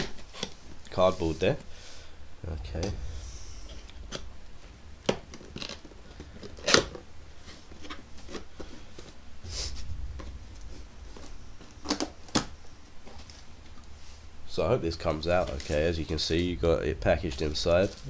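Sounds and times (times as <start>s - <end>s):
sharp crack: 9.4s - 14.0s.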